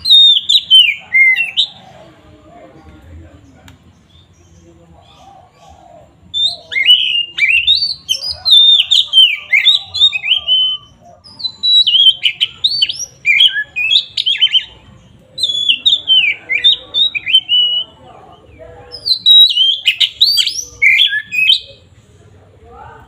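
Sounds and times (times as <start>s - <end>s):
bird singing whistled notes: 0.0s - 1.8s, 6.3s - 18.0s, 19.0s - 21.9s.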